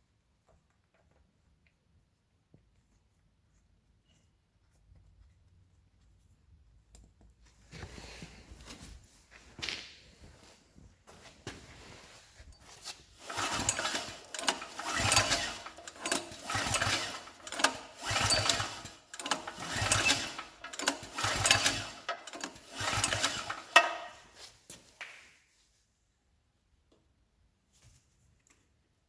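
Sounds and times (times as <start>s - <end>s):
generator engine cranking: 12.9s - 24.3s.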